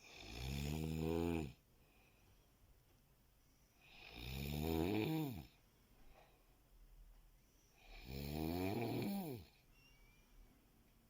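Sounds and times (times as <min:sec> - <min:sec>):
person snoring: 0:00.0 - 0:01.6, 0:03.8 - 0:05.5, 0:07.8 - 0:09.6.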